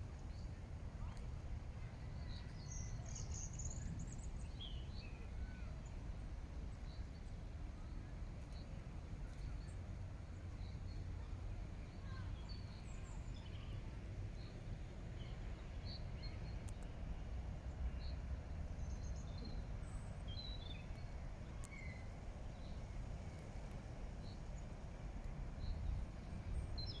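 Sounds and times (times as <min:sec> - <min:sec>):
small birds chirping: 0:10.4 - 0:14.6, 0:18.8 - 0:27.0.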